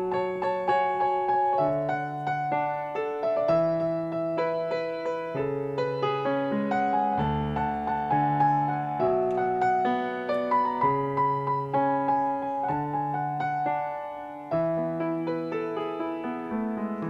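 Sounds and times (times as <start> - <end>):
piano melody with chords: 0.0 - 17.0.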